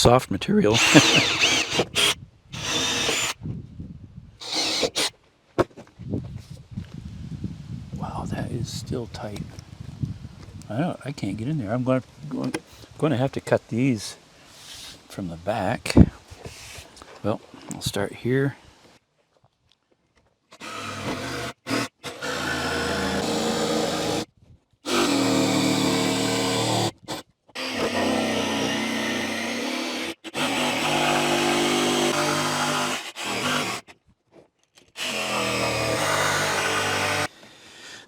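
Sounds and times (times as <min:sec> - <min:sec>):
jigsaw cutting countertop: 0:00.8 - 0:03.4, 0:04.4 - 0:05.1, 0:20.6 - 0:24.2, 0:24.9 - 0:33.9, 0:35.0 - 0:37.3.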